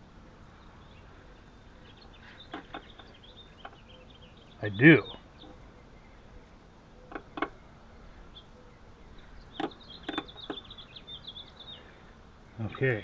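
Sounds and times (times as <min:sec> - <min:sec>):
small bird twittering: 0:00.6 - 0:12.8.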